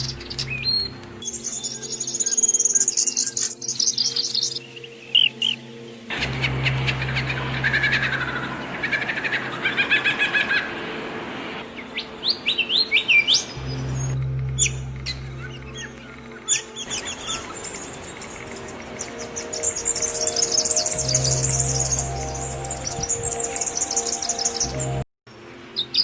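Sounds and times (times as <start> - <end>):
small birds chirping: 0.0 - 10.7, 11.7 - 25.0
steady low hum: 6.1 - 9.6, 13.5 - 23.7
sharp rising whistled notes: 12.2 - 25.0.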